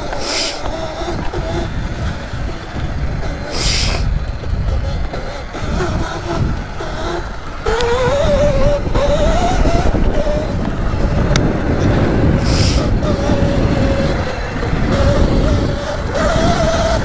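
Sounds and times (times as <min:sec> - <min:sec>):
electric motor whining: 0:00.0 - 0:17.0
low rumble: 0:08.2 - 0:16.8.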